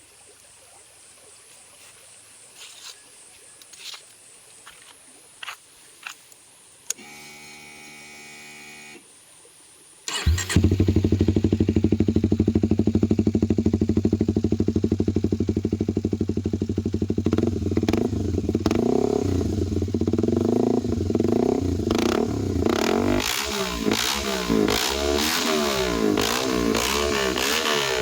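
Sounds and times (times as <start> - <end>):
motorcycle engine idling and revving: 10.1 - 28.0.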